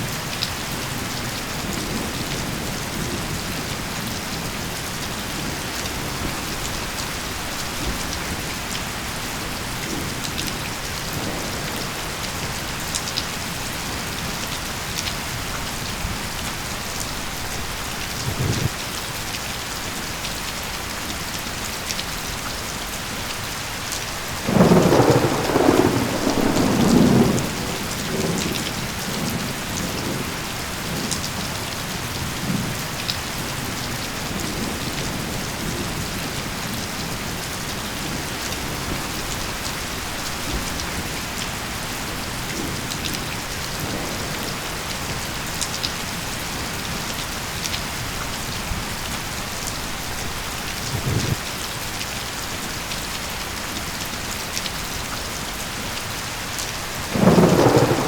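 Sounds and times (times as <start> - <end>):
steady rain falling: 0.0 - 58.0
thunder rumble: 17.6 - 18.8, 24.5 - 31.0, 50.0 - 51.4, 57.1 - 58.0.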